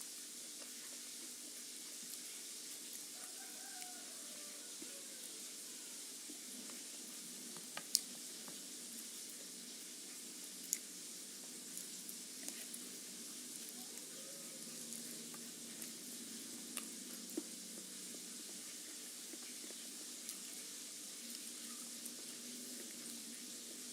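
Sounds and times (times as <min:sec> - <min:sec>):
food sizzling in oil: 0:00.0 - 0:16.2.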